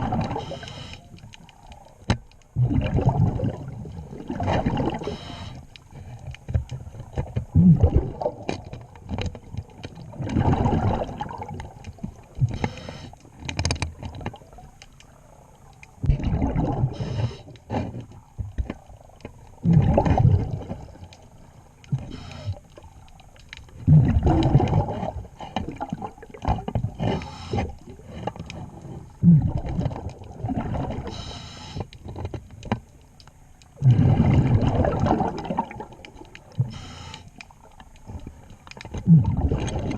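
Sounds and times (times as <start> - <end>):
exhaled bubbles gushing underwater: 0.0 - 0.7, 2.5 - 5.3, 7.5 - 8.7, 9.4 - 12.6, 16.0 - 17.4, 18.8 - 22.2, 23.8 - 27.1, 29.1 - 31.2, 33.8 - 36.8, 38.9 - 39.9
small clicks: 11.5 - 16.0.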